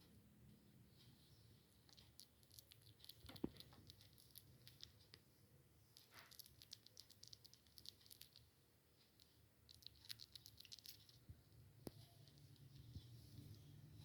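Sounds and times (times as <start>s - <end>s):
kittens lapping milk: 1.8s - 5.3s, 6.0s - 8.6s, 9.2s - 11.3s.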